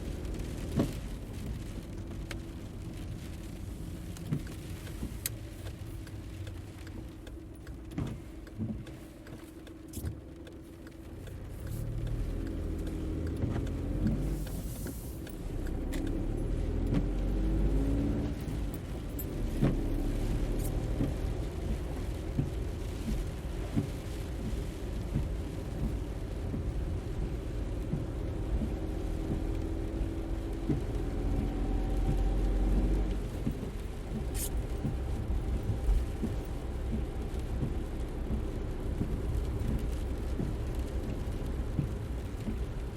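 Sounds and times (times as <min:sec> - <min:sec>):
car engine revving: 0:11.3 - 0:42.8.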